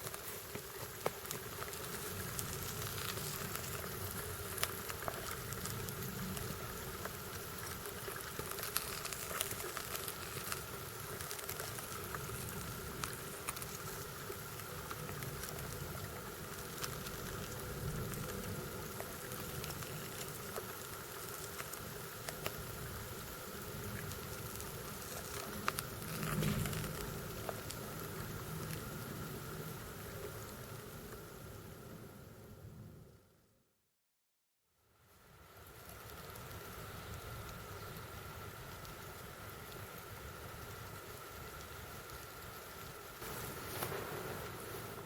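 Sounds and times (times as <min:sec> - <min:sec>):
dense crackling ticks: 0:00.0 - 0:31.2, 0:35.6 - 0:45.0
faint steady drone: 0:00.0 - 0:33.5.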